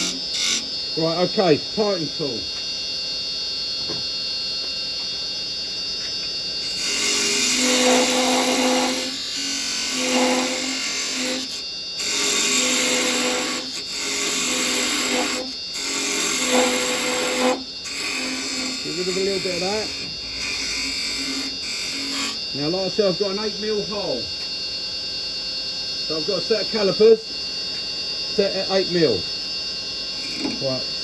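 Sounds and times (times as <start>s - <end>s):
tool cutting spinning wood: 0.0s - 2.6s, 6.6s - 24.3s, 30.1s - 31.0s
wood lathe humming: 0.0s - 2.6s, 6.0s - 24.8s, 26.0s - 29.4s, 30.1s - 31.0s.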